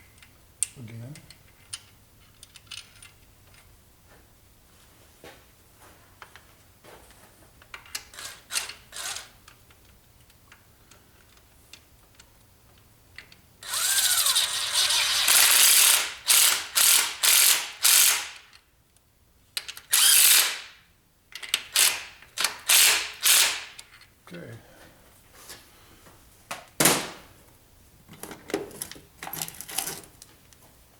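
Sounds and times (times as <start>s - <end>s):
ratchet wrench clicking: 13.6s - 18.6s, 19.9s - 20.7s, 21.5s - 23.8s.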